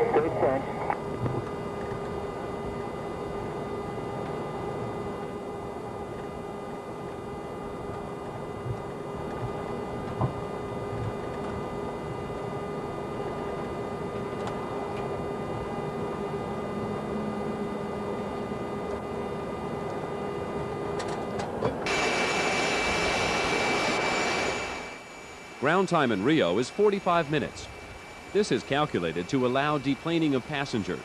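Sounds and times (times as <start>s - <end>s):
humming tones: 0.0s - 31.0s
jet cabin engine and air rush: 0.0s - 31.0s
loud rush with high whine: 21.8s - 31.0s.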